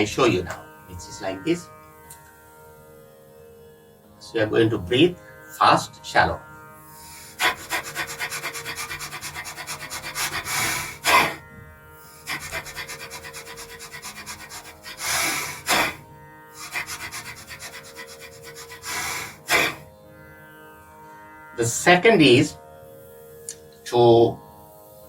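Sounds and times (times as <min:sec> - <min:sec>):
soft sitar music: 0:00.0 - 0:07.3, 0:11.4 - 0:12.3, 0:16.0 - 0:16.6, 0:19.8 - 0:25.0
person breathing fast: 0:07.0 - 0:11.4, 0:12.2 - 0:16.0, 0:16.6 - 0:19.9.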